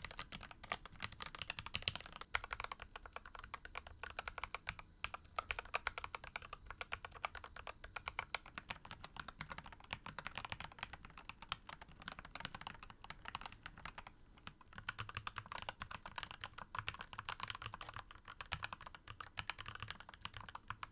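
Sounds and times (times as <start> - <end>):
typing on a mechanical keyboard: 0.0 - 20.9.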